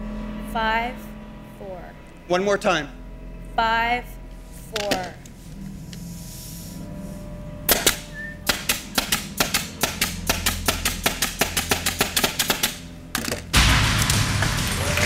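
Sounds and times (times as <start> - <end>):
pneumatic nail gun firing: 7.7 - 13.4
applause: 14.6 - 15.0.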